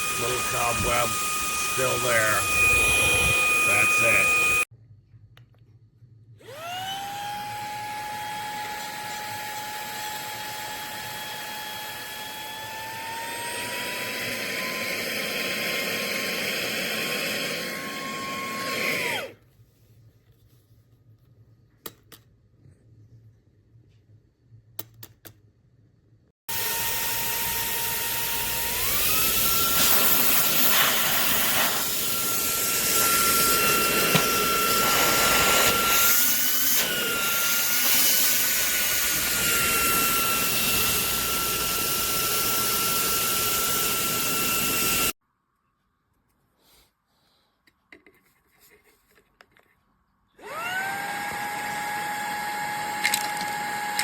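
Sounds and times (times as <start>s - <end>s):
handheld vacuum motor whining: 0.0s - 4.7s, 6.4s - 19.4s, 26.5s - 45.2s, 50.4s - 54.0s.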